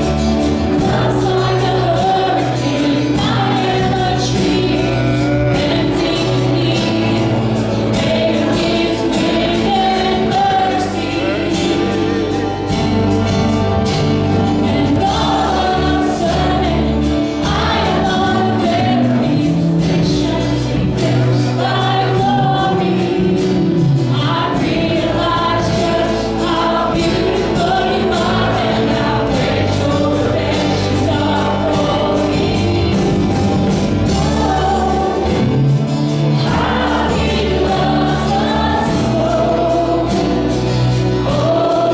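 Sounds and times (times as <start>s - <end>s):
bass and drums beat: 0.0s - 41.9s
singers singing together: 0.0s - 41.9s.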